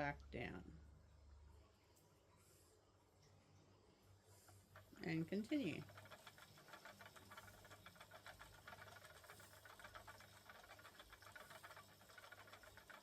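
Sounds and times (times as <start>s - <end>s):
spinning wheel ticking: 4.5s - 13.0s.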